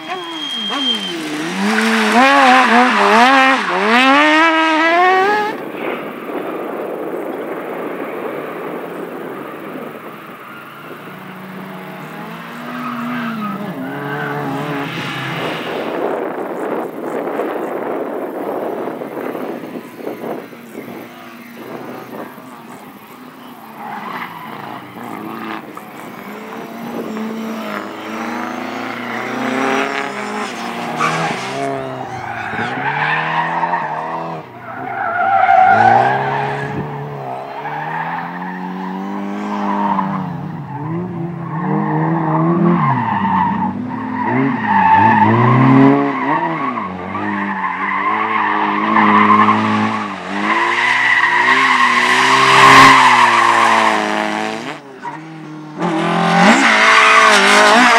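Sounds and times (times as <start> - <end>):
tyres squealing: 0.0 - 5.5, 46.1 - 57.9
car engine revving: 0.0 - 5.7, 20.3 - 57.9.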